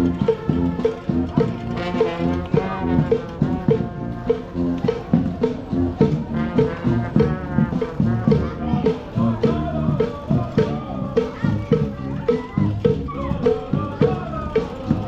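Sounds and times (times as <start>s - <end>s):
drums and percussion beat: 0.0s - 15.0s
horns holding sustained notes: 0.0s - 15.0s.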